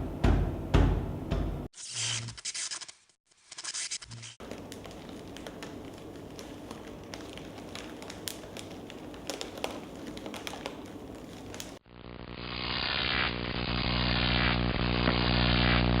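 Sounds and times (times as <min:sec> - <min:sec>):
crackling with sharp clicks: 0:03.9 - 0:11.8.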